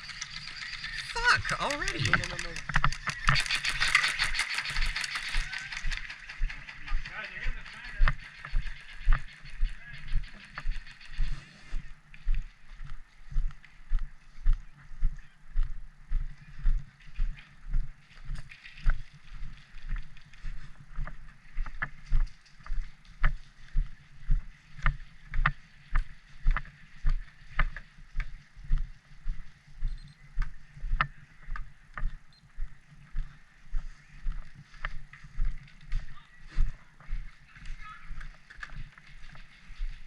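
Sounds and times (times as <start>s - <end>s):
sharp clicks: 0.0s - 11.2s
footsteps walking: 0.0s - 40.0s.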